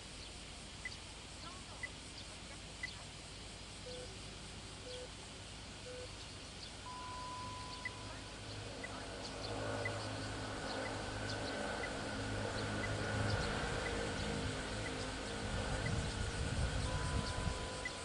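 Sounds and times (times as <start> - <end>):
low background rumble: 0.0 - 18.0
time signal pips: 3.8 - 4.1, 5.8 - 6.1, 6.8 - 8.2, 16.8 - 18.0
light ticking: 12.6 - 18.0.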